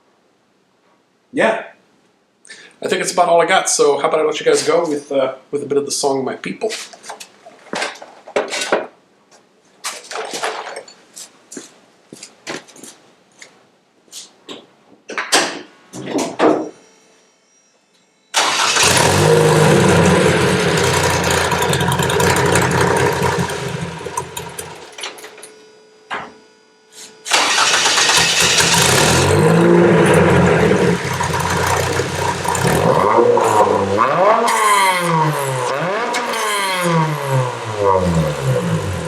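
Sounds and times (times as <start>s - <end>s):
car engine starting and revving: 18.4s - 24.9s, 27.3s - 39.0s.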